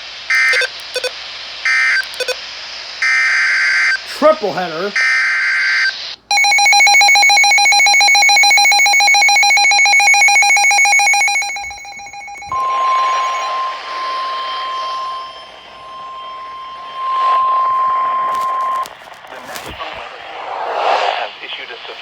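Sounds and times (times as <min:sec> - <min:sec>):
radio hiss: 0:00.0 - 0:06.3, 0:17.8 - 0:22.0
pulsing electronic alarm tone: 0:00.3 - 0:01.1, 0:05.0 - 0:18.9
steady single-pitched tone: 0:06.3 - 0:19.0.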